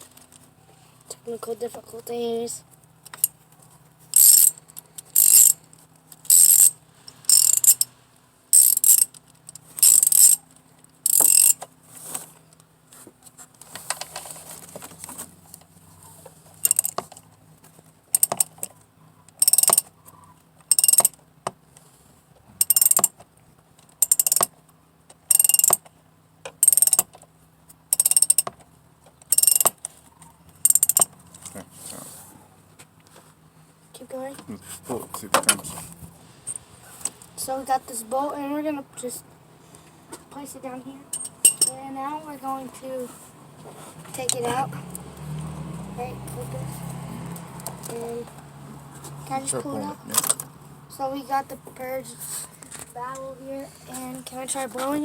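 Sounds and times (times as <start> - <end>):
ratchet wrench clicking: 3.0 - 3.4, 4.1 - 7.9, 8.6 - 10.4, 11.0 - 11.7, 16.6 - 17.2, 18.1 - 18.7, 19.4 - 19.9, 20.7 - 21.2, 22.6 - 23.2, 24.0 - 24.5, 25.2 - 25.9, 26.5 - 27.2, 27.9 - 28.6, 29.2 - 29.9, 30.6 - 31.1, 41.1 - 41.8.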